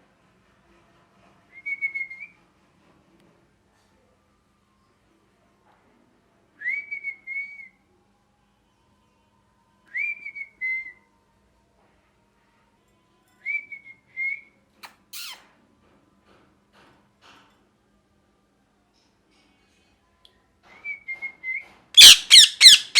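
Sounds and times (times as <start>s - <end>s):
parrot harsh screech: 15.1s - 15.4s, 22.0s - 22.9s
parrot whistled calls: 15.1s - 15.4s, 22.0s - 22.9s.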